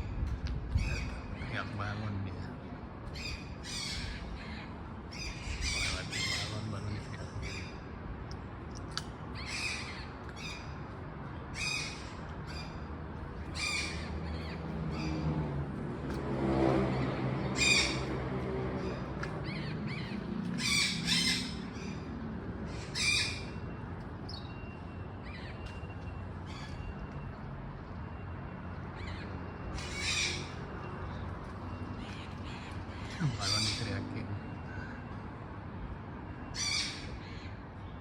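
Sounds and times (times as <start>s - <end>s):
macaw squawking: 3.2s - 7.8s, 13.5s - 15.2s, 17.6s - 18.1s, 18.8s - 22.0s, 22.7s - 23.6s, 29.1s - 30.6s, 32.3s - 34.6s.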